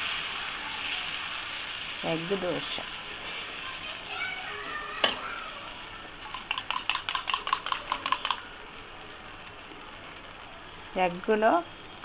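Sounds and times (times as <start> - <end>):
frying hiss: 0.0 - 12.0
egg beaten in a bowl: 6.2 - 8.4.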